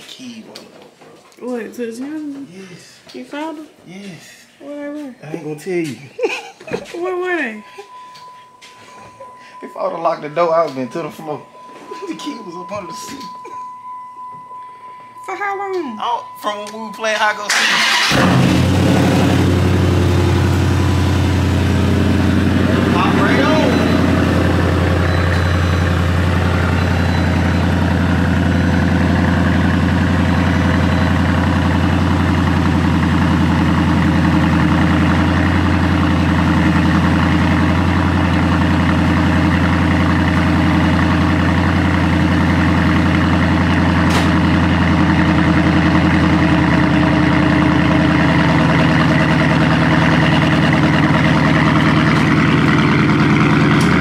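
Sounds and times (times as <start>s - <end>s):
car engine idling: 17.5s - 54.0s.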